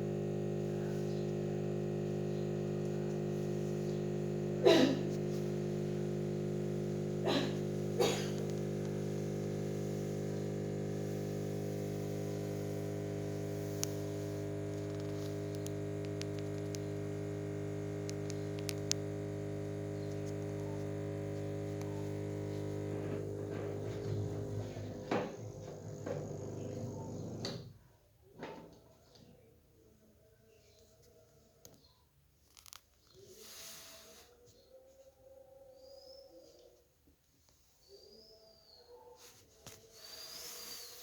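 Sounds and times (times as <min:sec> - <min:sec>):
electrical hum: 0:00.0 - 0:27.7
faint clicks: 0:12.1 - 0:27.6.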